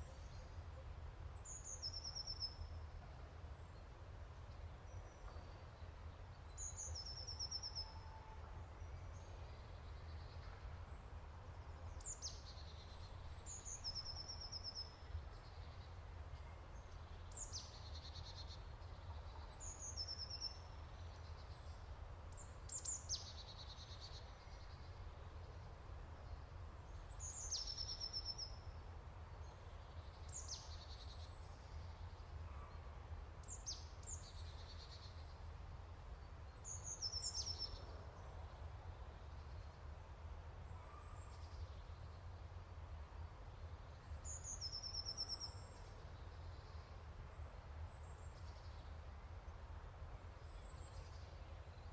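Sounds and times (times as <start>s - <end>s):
songbird singing with trill: 1.2s - 2.8s, 4.5s - 11.0s, 11.6s - 25.6s, 26.2s - 28.7s, 29.4s - 32.6s, 33.4s - 35.4s, 36.2s - 38.6s, 43.6s - 47.0s.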